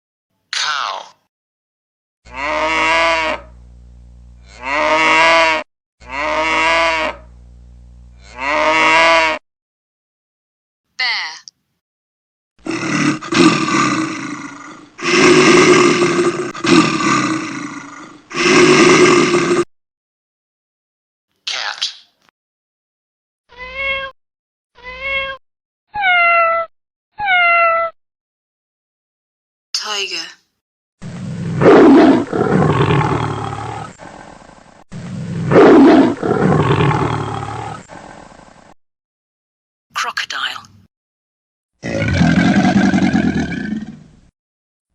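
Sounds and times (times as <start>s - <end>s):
wild animal roaring: 2.3s - 3.6s, 4.4s - 7.3s, 8.2s - 9.4s, 12.6s - 19.7s, 31.0s - 38.8s, 41.8s - 44.2s.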